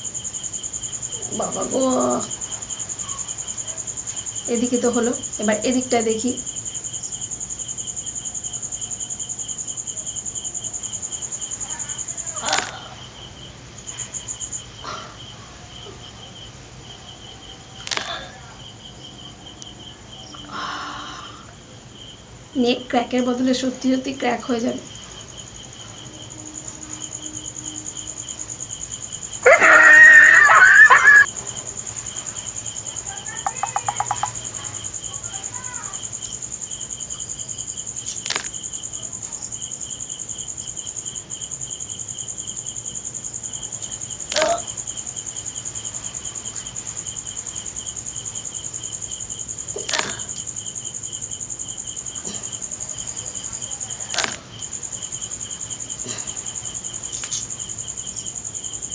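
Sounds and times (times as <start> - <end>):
insects chirping: 0.0 - 58.9
sharp clicks: 17.8 - 18.1, 33.4 - 34.4.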